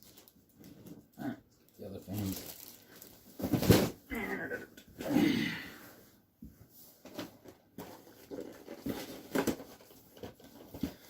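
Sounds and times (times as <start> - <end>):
packaging taps and rustles: 7.0 - 11.0.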